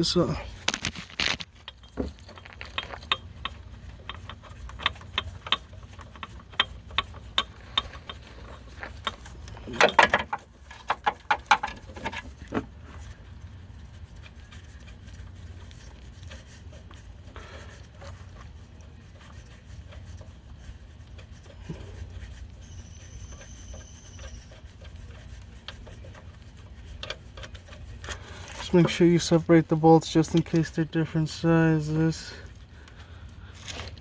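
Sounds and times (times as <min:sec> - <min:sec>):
tools scraping and knocking on metal: 0:00.5 - 0:13.0
low background rumble: 0:10.4 - 0:34.0.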